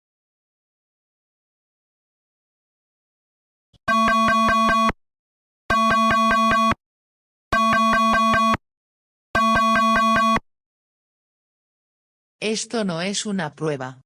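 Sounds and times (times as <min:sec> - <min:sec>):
pulsing emergency alert alarm: 0:03.9 - 0:05.0, 0:05.7 - 0:06.8, 0:07.5 - 0:08.6, 0:09.4 - 0:10.4.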